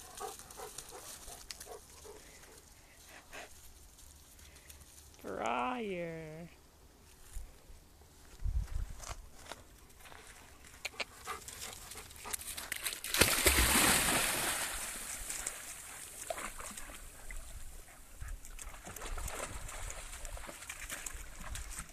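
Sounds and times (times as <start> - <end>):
loud water splash: 13.1 - 15.2.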